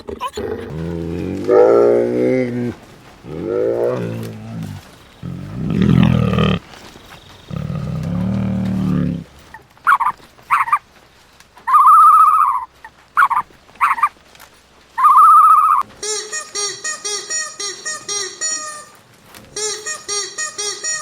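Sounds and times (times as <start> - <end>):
animal's low rough call: 0.0 - 9.6
high-pitched cries: 0.6 - 6.6, 15.0 - 19.0, 19.6 - 21.0.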